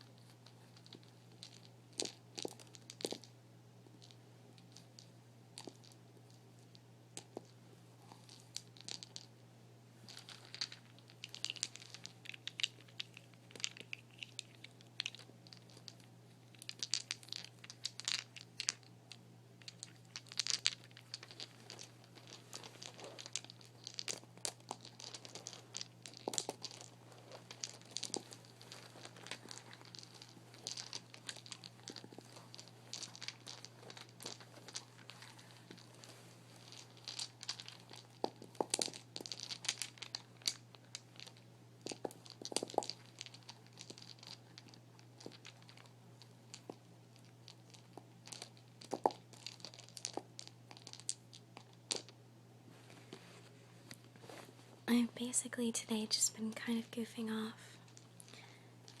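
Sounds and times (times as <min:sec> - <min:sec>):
thin material crinkling: 0:19.7 - 0:40.7.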